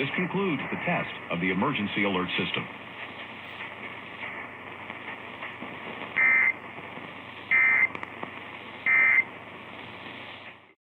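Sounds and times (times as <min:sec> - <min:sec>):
steady background hiss: 0:00.0 - 0:10.8
digital data tone bursts: 0:06.2 - 0:06.6, 0:07.5 - 0:07.9, 0:08.8 - 0:09.3.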